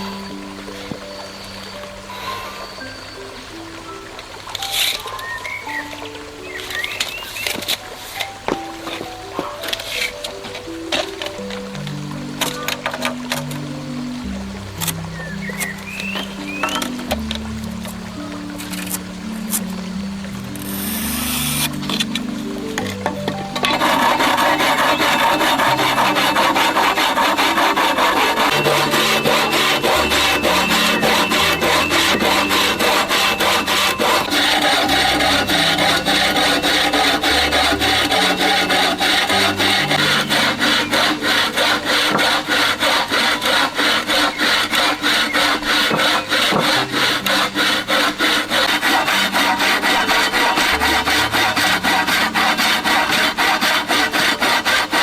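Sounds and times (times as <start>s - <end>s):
saw cutting wood: 20.5s - 55.0s.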